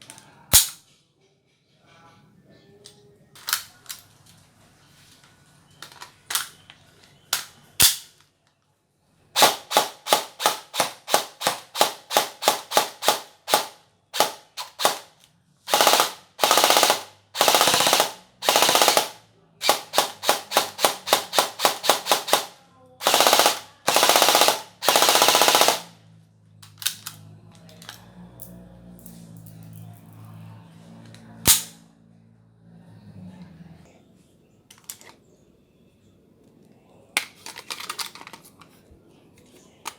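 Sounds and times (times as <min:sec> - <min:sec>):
airsoft gun gearbox firing: 0:09.4 - 0:15.1, 0:15.7 - 0:25.9.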